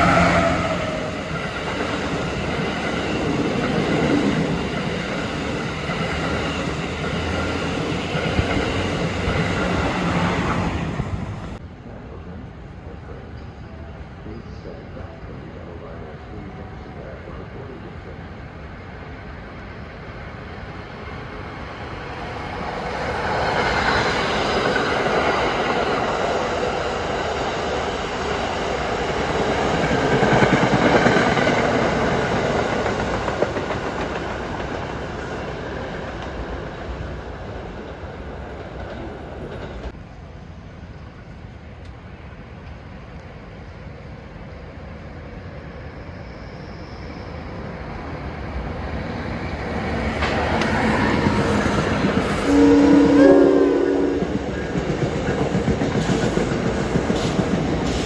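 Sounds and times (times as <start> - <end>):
passenger train passing: 0.0 - 58.0.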